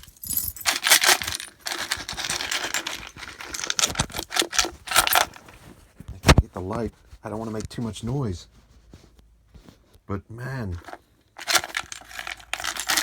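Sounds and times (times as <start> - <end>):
small hard items rummaged: 0.0 - 6.9, 10.7 - 13.0.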